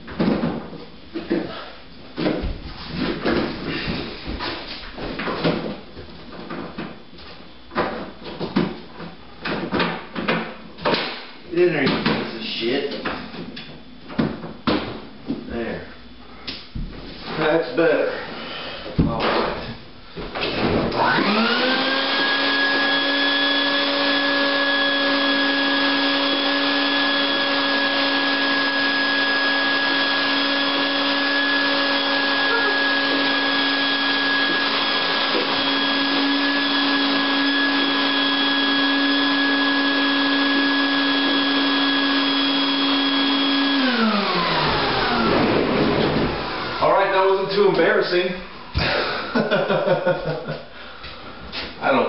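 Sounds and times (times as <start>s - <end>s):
shop vac motor whine: 17.7s - 47.4s.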